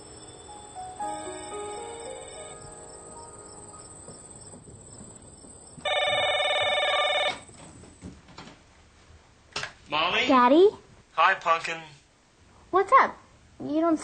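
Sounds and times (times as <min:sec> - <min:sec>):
telephone ringing: 0:00.0 - 0:04.4, 0:05.8 - 0:07.5
crickets chirping: 0:00.0 - 0:08.0.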